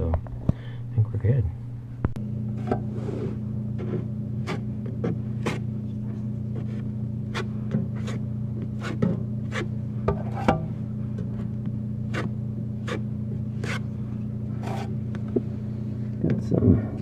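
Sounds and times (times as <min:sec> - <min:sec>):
low electrical hum: 0:00.0 - 0:17.0
drywall knife scraping: 0:02.9 - 0:05.7, 0:06.5 - 0:10.6, 0:12.1 - 0:15.0.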